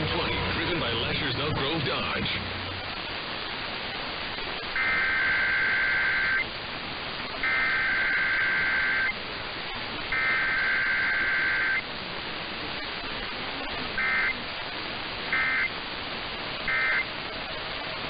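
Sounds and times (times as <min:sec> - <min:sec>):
radio hiss: 0:00.0 - 0:18.0
two-tone digital data bursts: 0:04.7 - 0:06.5, 0:07.4 - 0:09.2, 0:10.1 - 0:11.9, 0:14.0 - 0:14.4, 0:15.3 - 0:15.8, 0:16.6 - 0:17.1.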